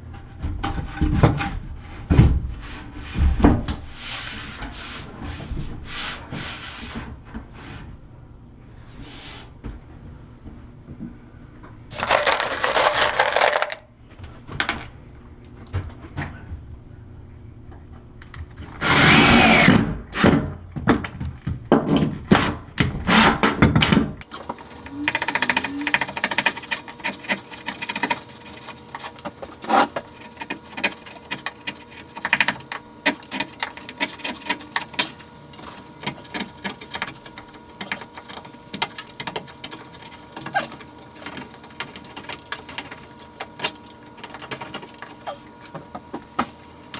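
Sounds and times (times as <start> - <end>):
small knocks and clicks: 24.2 - 46.9.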